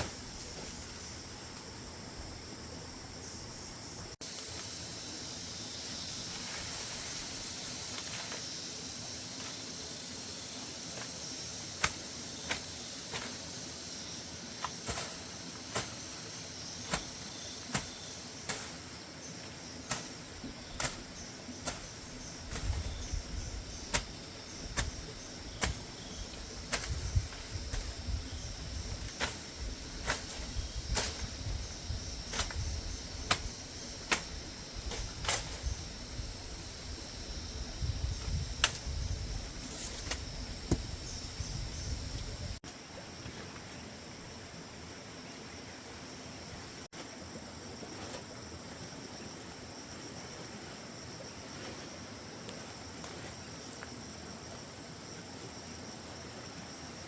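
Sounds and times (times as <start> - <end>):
steady high hiss: 0.0 - 42.9.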